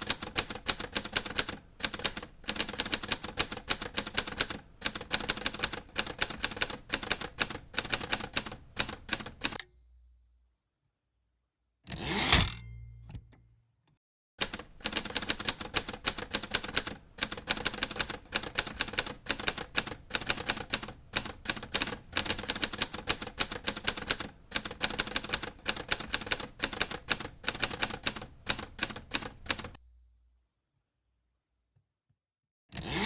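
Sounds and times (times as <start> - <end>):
rapid typewriter keystrokes: 0.0 - 9.6, 14.4 - 29.8.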